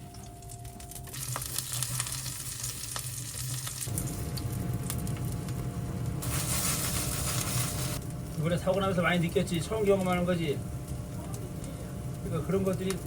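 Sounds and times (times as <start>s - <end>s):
pancake sizzling in oil: 0.8s - 10.3s.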